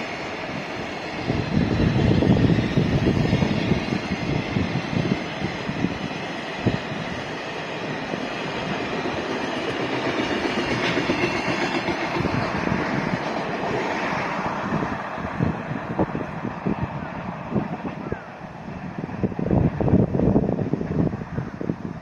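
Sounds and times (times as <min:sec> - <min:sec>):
train wheels clattering over rails: 0:00.0 - 0:16.2.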